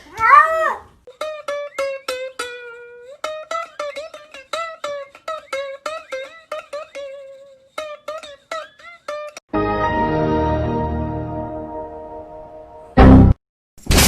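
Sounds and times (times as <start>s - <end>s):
plucked string instrument: 1.1s - 12.2s.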